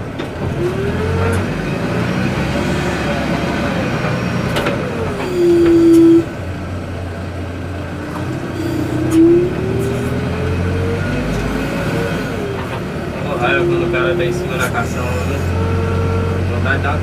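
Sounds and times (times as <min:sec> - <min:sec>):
diesel engine under hydraulic load: 0:00.0 - 0:17.0
hydraulic whine: 0:03.2 - 0:16.6.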